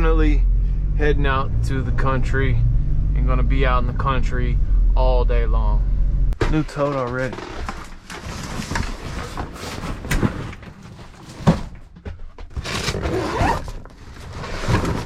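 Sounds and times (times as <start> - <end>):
packages rustling and scraping: 6.7 - 15.0.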